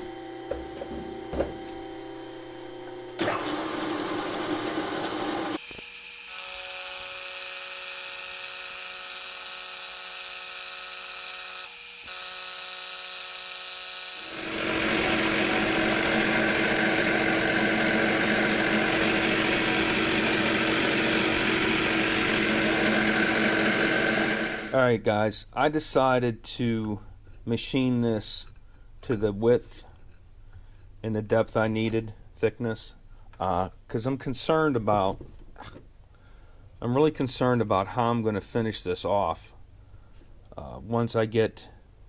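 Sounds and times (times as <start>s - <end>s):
machine hum: 0.0s - 5.7s, 13.7s - 24.8s
rough metal cutting sound: 3.1s - 24.8s.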